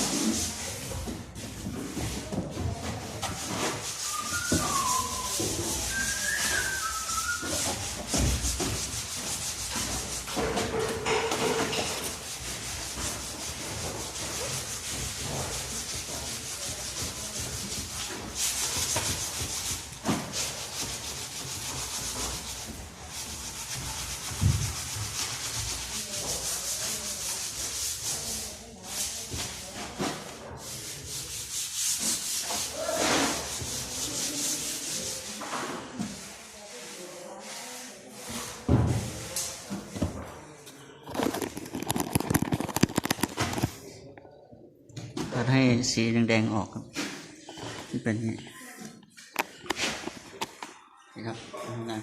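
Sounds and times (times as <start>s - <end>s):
sandpaper scrubbing wood: 0.0s - 39.6s.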